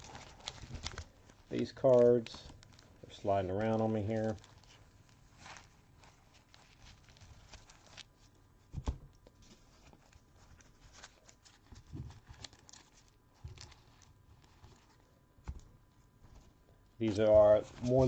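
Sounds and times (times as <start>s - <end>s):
cards rustling: 0.0s - 8.3s, 16.3s - 18.0s.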